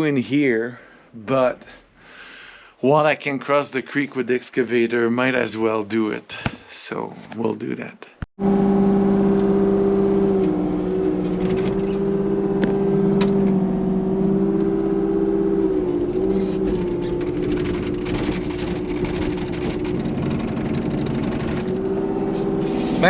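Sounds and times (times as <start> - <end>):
excavator engine droning: 8.4 - 23.0.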